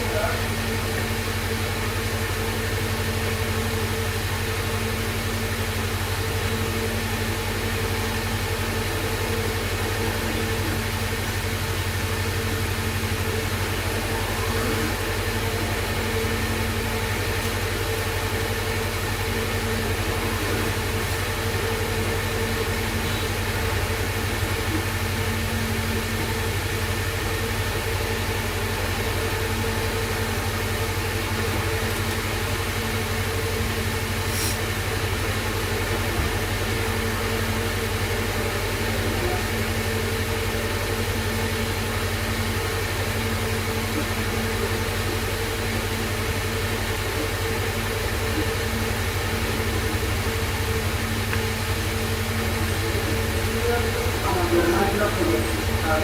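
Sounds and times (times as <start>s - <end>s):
mechanical hum: 0.0s - 56.0s
hiss: 34.2s - 34.8s.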